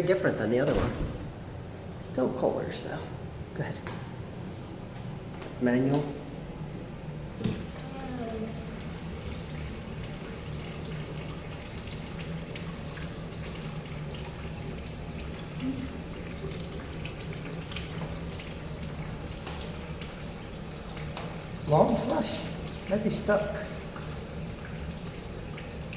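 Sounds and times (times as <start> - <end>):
toilet lever click: 7.4 - 7.7
toilet water rushing: 7.4 - 25.9.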